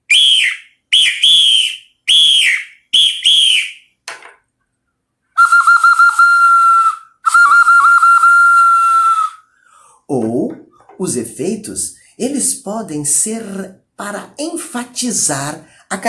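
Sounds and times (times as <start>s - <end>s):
whistled bird calls: 0.1s - 3.8s.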